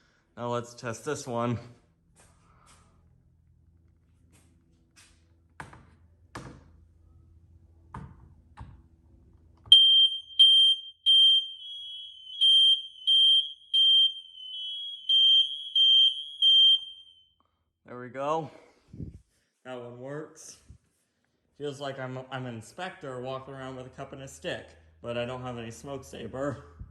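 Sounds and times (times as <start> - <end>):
smoke alarms beeping: 9.7 - 17.4.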